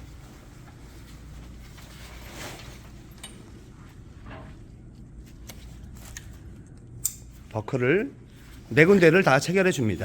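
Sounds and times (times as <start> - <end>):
tent fabric rustling: 0.0 - 3.1.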